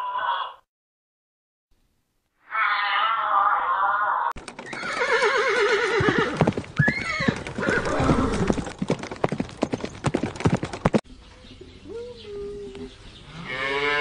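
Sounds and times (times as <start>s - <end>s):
horse whinnying: 2.5s - 8.8s
hooves clopping: 4.4s - 11.0s.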